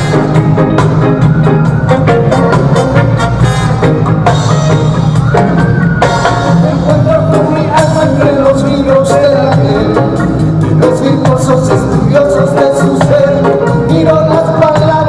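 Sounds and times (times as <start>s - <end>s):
reggae band playing: 0.0s - 15.0s
person singing: 6.0s - 15.0s.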